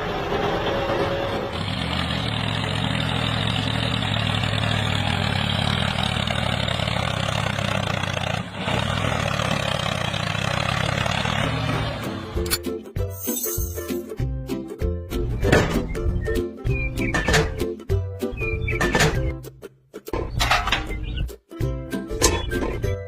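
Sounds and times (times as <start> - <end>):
truck engine running: 0.0 - 12.5.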